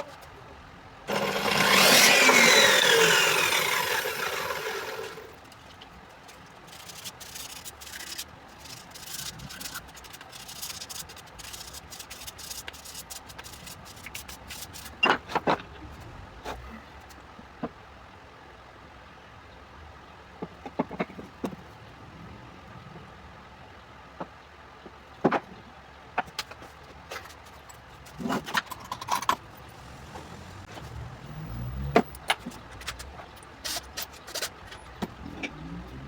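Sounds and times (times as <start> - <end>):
electric woodworking tool running: 1.1 - 5.4
scraping and rubbing on wood: 1.1 - 15.7, 26.2 - 35.9.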